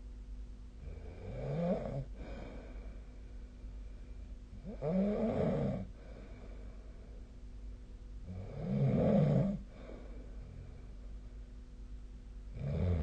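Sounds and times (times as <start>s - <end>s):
person snoring: 0.8s - 2.6s, 4.6s - 5.9s, 8.3s - 10.0s, 12.6s - 13.0s
quiet breathing: 0.8s - 8.7s, 9.3s - 13.0s.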